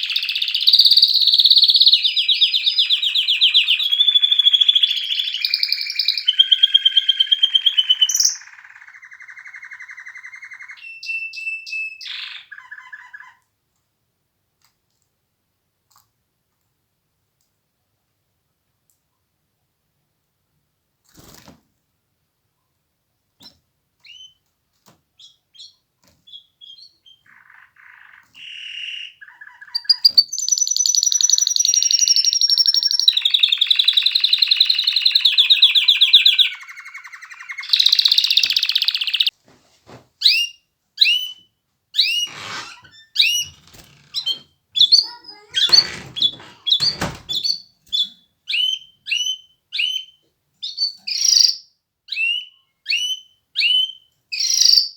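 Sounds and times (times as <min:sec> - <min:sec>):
canary singing trills: 0:00.0 - 0:13.4, 0:25.2 - 0:39.3, 0:40.2 - 0:54.9.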